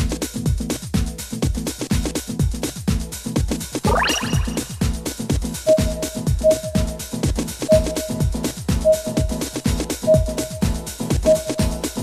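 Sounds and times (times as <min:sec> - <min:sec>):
rising synth sweep: 0:03.8 - 0:04.9
electronic dance music: 0:03.8 - 0:05.0.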